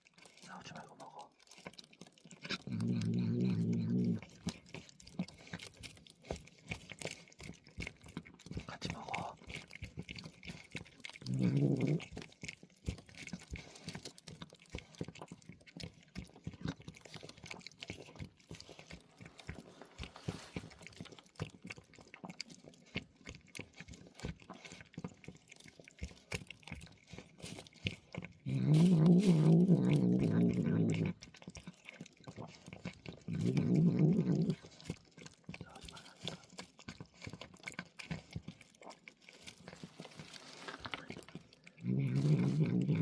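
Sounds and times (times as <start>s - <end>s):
cats crunching dry food: 0.0s - 43.0s
low cat growl: 2.5s - 4.6s, 8.6s - 9.6s, 11.1s - 12.3s, 28.4s - 31.5s, 32.4s - 35.0s, 40.4s - 43.0s.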